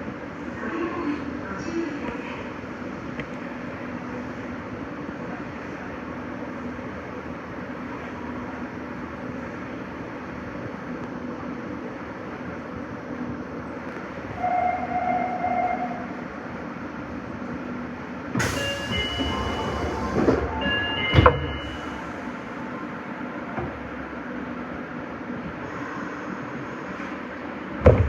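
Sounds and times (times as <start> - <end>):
subway train rumbling in tunnel: 0.0 - 28.0
high ringing tones: 18.5 - 22.4.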